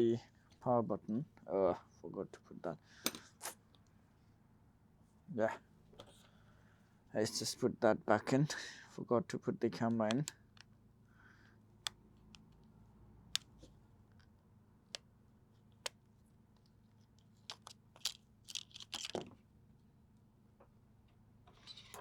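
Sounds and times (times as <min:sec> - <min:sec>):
clicks of handling phone parts: 0:03.0 - 0:03.4, 0:10.0 - 0:10.7, 0:16.6 - 0:19.4.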